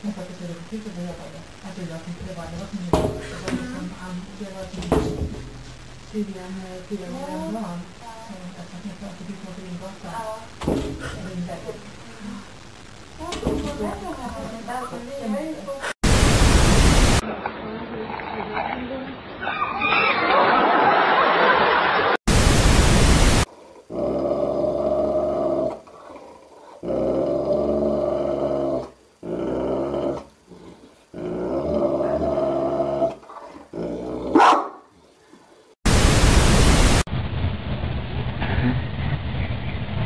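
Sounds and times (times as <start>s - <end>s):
loud hiss bursts: 16.0s - 17.2s, 22.3s - 23.5s, 35.9s - 37.1s
dog squealing: 19.4s - 20.3s
dog growling: 23.7s - 34.8s.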